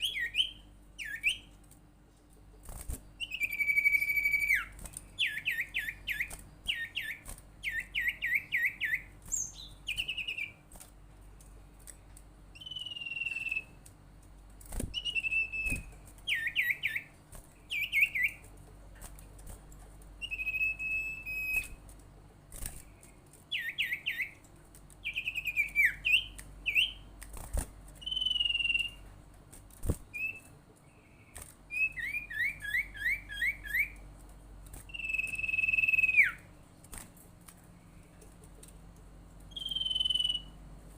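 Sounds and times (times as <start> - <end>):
bird whistling song: 0.0 - 1.5, 3.2 - 10.6, 12.5 - 13.8, 14.9 - 18.4, 20.2 - 21.8, 23.5 - 24.4, 25.0 - 27.1, 28.0 - 29.0, 30.1 - 30.5, 31.7 - 34.0, 34.9 - 36.5, 39.5 - 40.6.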